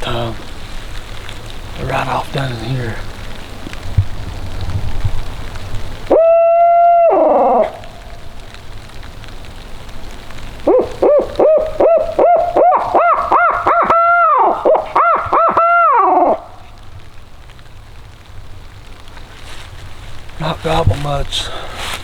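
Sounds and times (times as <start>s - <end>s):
owl hoot call: 6.0s - 8.4s, 10.6s - 16.8s.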